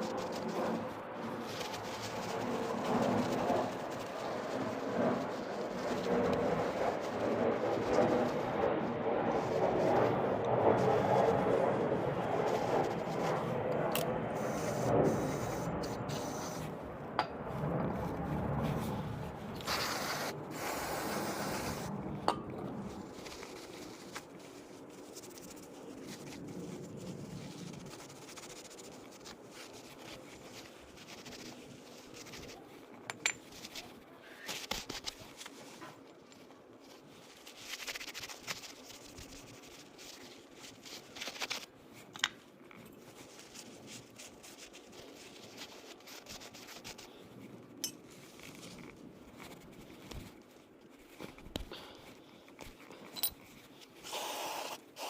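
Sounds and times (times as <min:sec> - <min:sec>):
metallic clicks and clinks: 0:53.0 - 0:53.4
metal parts rubbing and scraping: 0:53.0 - 0:53.7.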